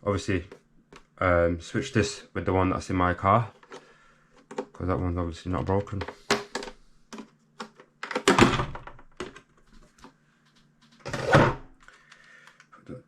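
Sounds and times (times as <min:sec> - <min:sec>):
plastic parts clicking and knocking: 0:03.5 - 0:11.2.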